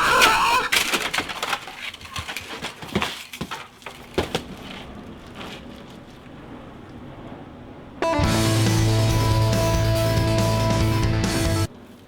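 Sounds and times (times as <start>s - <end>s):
rustling handling noise: 0.0s - 12.0s
knocks and thuds: 0.1s - 6.3s.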